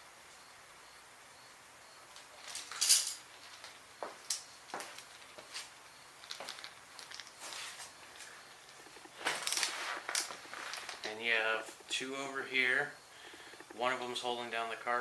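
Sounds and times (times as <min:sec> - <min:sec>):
metal tools clinking: 0:02.4 - 0:05.6, 0:06.2 - 0:11.4.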